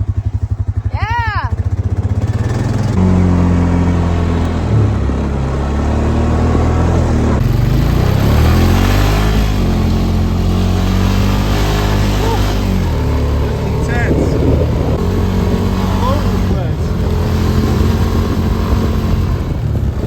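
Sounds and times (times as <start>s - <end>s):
atv engine under load: 0.0s - 20.0s
steady rushing noise: 6.5s - 20.0s.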